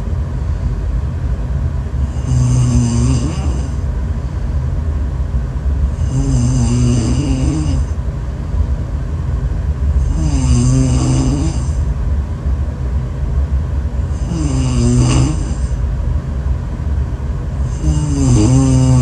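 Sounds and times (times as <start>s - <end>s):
snoring: 2.0s - 3.8s, 6.0s - 8.0s, 10.0s - 11.8s, 14.1s - 15.8s, 17.6s - 19.0s.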